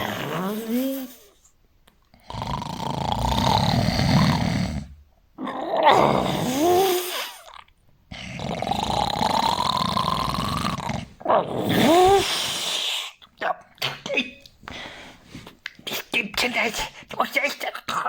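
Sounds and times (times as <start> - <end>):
person snoring heavily: 0.0 - 1.4, 2.2 - 7.5, 8.1 - 13.0.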